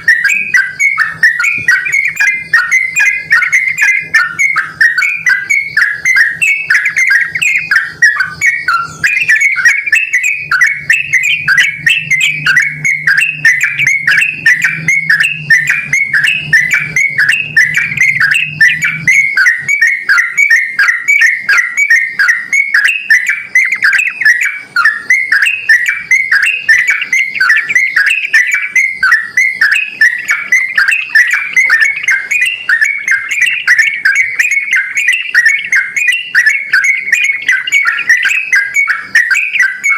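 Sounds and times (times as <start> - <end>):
bird singing bubbly whistled notes: 0.0 - 39.9.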